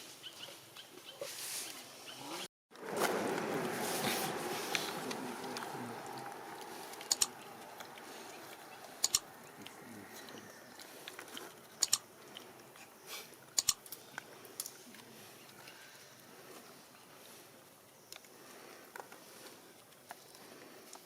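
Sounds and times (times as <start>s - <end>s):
monkey crunching food: 2.9s - 15.6s.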